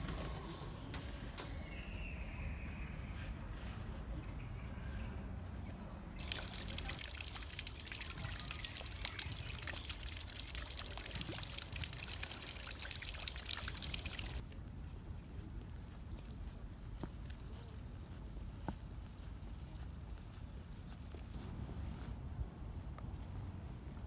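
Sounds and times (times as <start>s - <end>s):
water splashing and trickling: 6.2s - 14.4s.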